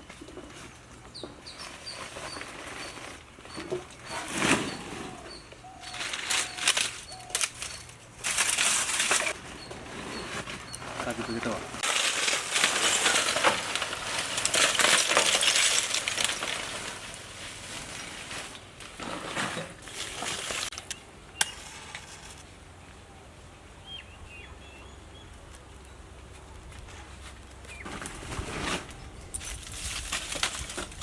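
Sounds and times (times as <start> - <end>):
clinking and rattling handling: 11.8 - 17.1.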